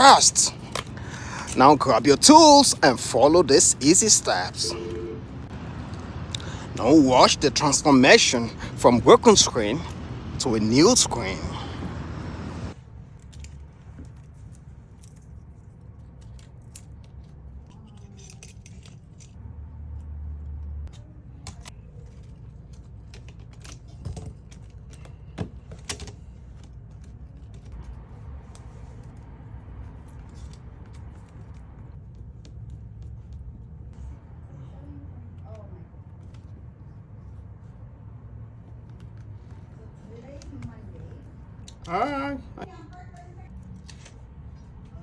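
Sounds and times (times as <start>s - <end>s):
low hum: 4.5s - 6.7s
small tools clicking and clinking: 13.2s - 19.4s.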